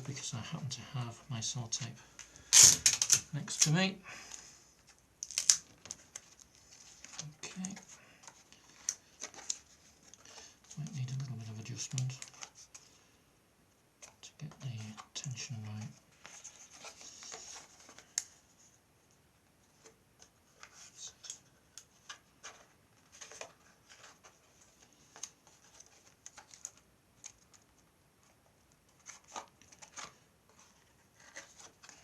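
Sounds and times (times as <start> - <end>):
tape and plastic being handled: 2.2 - 3.8, 4.8 - 12.8, 19.8 - 32.0.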